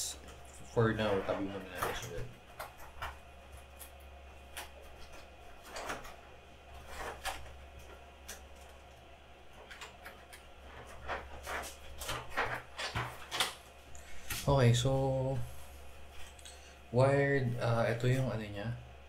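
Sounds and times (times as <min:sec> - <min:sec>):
steady low hum: 0:00.0 - 0:19.0
objects clicking and knocking on desk: 0:09.6 - 0:13.6.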